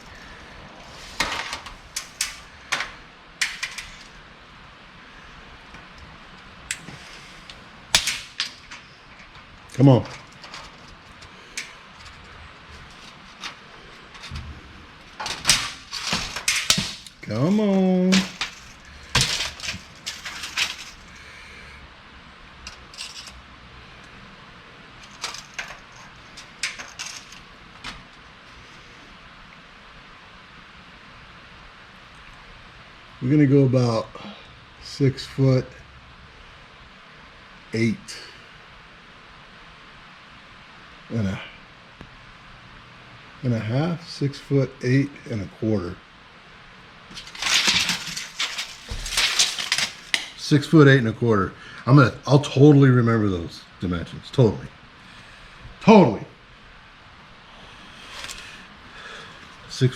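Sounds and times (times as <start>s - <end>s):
tool handling clicks and knocks: 1.0s - 4.1s, 6.7s - 21.2s, 25.0s - 28.0s, 47.1s - 50.4s
metallic clinks and rattles: 18.1s - 21.2s, 22.7s - 23.4s, 25.0s - 27.5s, 47.1s - 50.4s.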